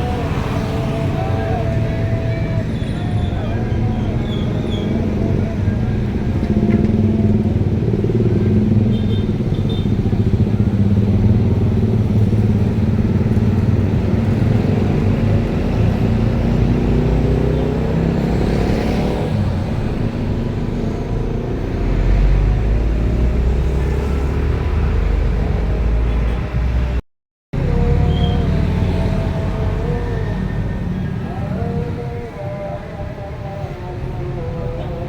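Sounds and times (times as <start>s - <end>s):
deep engine rumble: 0.0s - 17.4s, 27.6s - 35.0s
vehicles passing: 0.0s - 27.0s, 27.6s - 35.0s.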